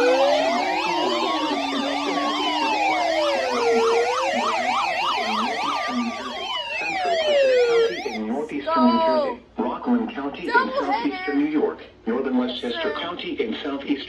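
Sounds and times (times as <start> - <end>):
siren wailing: 0.0 - 8.3
siren yelping: 0.0 - 8.3.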